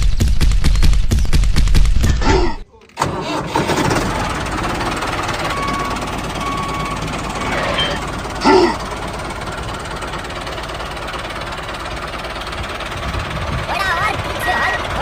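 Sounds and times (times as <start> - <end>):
person calling out: 2.2 - 2.8, 8.4 - 8.9
small tractor engine running with knocking: 3.0 - 15.0
short beeps: 5.5 - 8.1.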